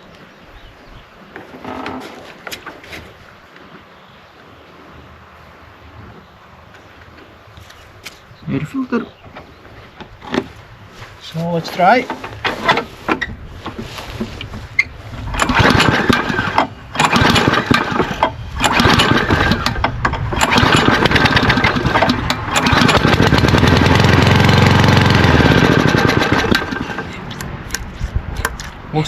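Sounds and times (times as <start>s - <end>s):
lawnmower engine running: 11.6s - 27.3s
recoil starter pulls: 11.8s - 27.8s.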